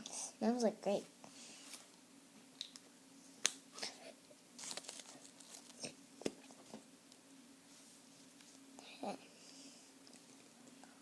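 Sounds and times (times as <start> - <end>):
faint steady hum: 0.0 - 11.0
packaging rustling: 4.6 - 6.6.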